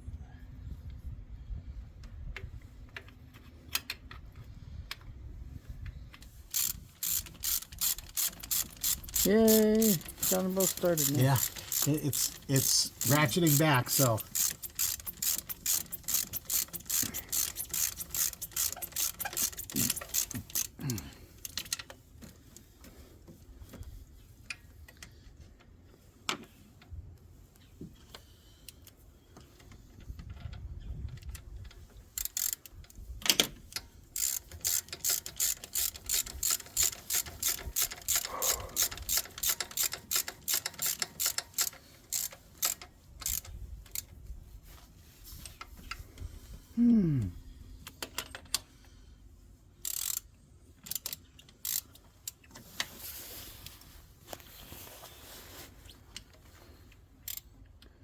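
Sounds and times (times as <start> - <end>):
ratchet wrench clicking: 6.2 - 21.9, 32.2 - 33.0, 33.7 - 44.1, 49.8 - 52.4, 57.2 - 57.5.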